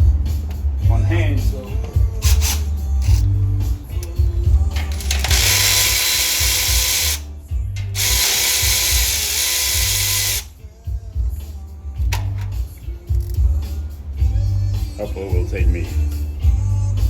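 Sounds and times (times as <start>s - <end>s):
background music with bass beat: 0.0s - 17.0s
power tool motor running: 4.9s - 7.2s, 7.9s - 10.5s.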